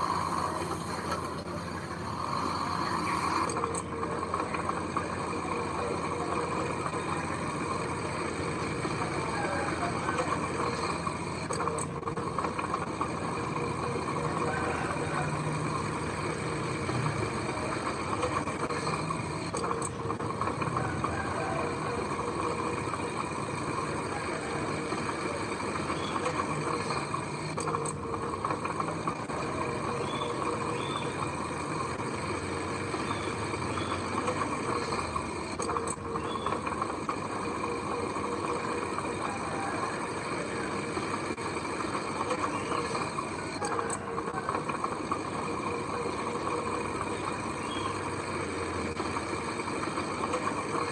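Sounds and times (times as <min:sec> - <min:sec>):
heavy machinery diesel engine running: 0:00.0 - 0:50.9.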